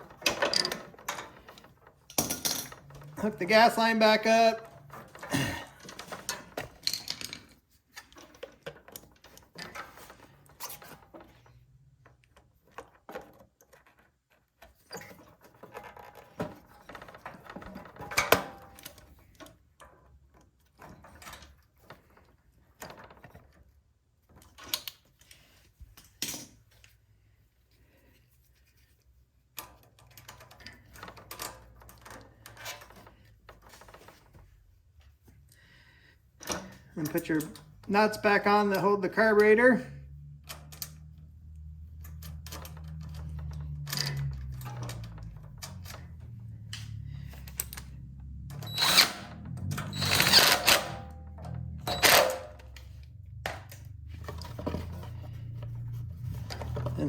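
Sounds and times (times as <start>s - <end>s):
metal parts and tools clicking: 0.0s - 23.6s, 40.4s - 57.0s.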